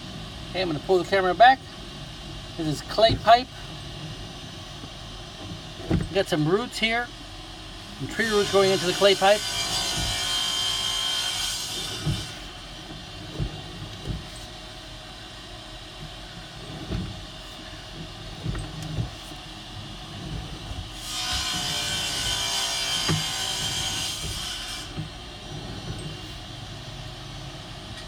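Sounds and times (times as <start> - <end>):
cable knocking and scraping in pipe: 9.6 - 14.5, 20.1 - 26.4.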